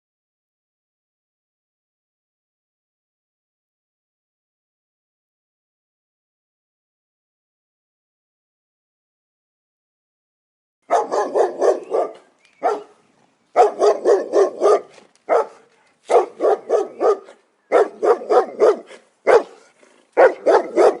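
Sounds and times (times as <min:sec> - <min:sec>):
recorded dog barking: 0:10.9 - 0:21.0.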